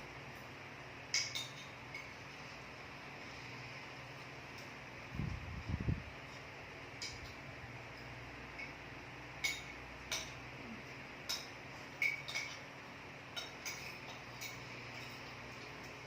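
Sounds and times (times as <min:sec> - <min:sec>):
faint steady hum: 0:00.0 - 0:16.0
cutlery clinking on a plate: 0:11.3 - 0:12.6, 0:13.3 - 0:16.0.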